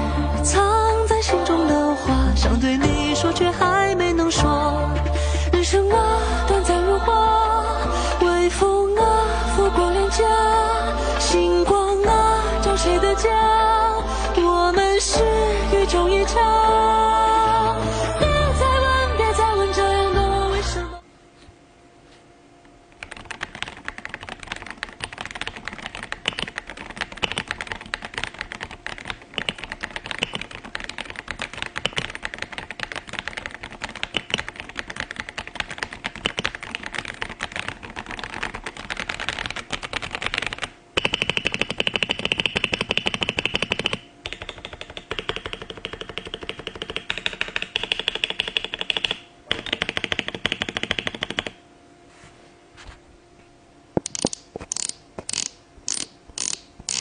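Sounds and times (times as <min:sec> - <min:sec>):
fast typing on mechanical keyboard: 0:23.0 - 0:51.6.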